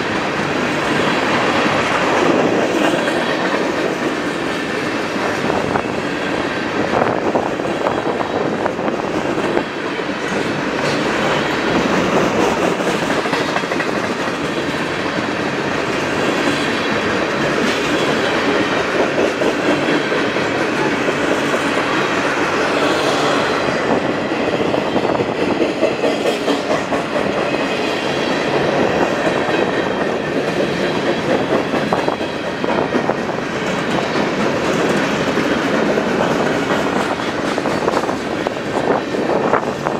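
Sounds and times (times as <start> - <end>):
train wheels clattering over rails: 0.0 - 39.9.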